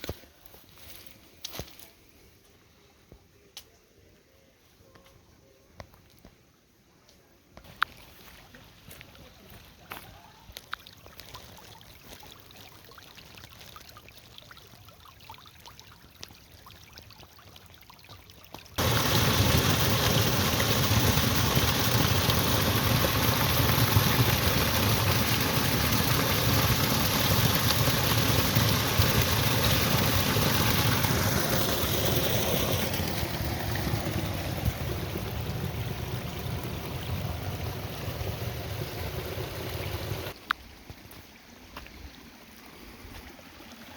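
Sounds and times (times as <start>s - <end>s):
loud rush of water: 18.8s - 40.4s.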